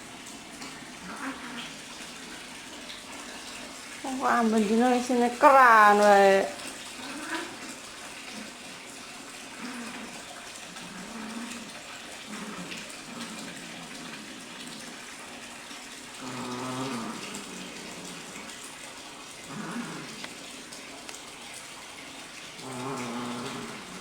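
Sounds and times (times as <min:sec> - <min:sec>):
cats growling yowls: 0:01.0 - 0:01.9, 0:07.0 - 0:08.5, 0:09.5 - 0:14.2, 0:16.1 - 0:18.7, 0:22.6 - 0:24.0.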